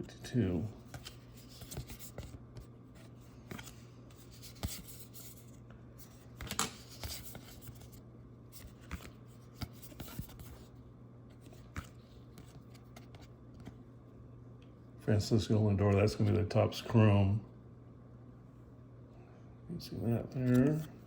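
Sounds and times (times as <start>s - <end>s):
steady low hum: 0.0s - 21.0s
cards rustling and sliding: 0.8s - 8.0s, 8.6s - 10.7s, 11.3s - 13.8s, 20.3s - 21.0s.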